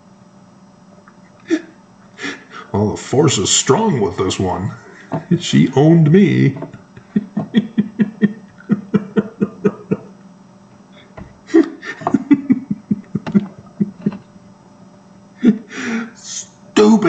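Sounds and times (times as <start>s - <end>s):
person laughing: 1.4s - 2.7s, 5.0s - 10.2s, 11.0s - 14.3s, 15.4s - 16.0s.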